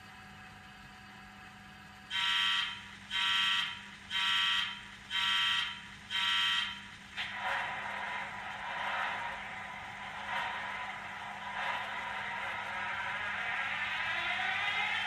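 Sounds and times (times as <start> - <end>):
rough engine sound: 6.8 - 15.0.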